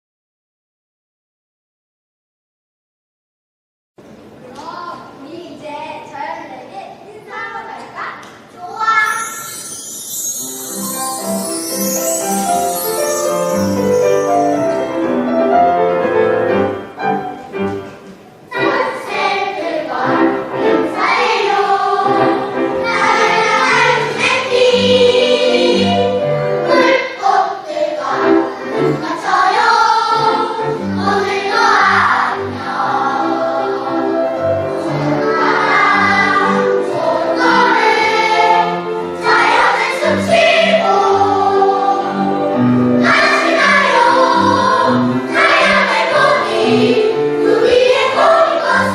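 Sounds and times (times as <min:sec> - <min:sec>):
piano accompaniment: 0:09.0 - 0:48.9
choir singing: 0:09.1 - 0:16.8, 0:18.5 - 0:48.9.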